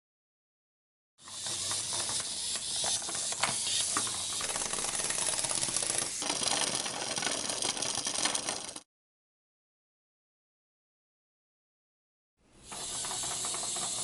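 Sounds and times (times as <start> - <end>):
clockwork toy whirring: 1.2 - 8.8, 12.6 - 14.0.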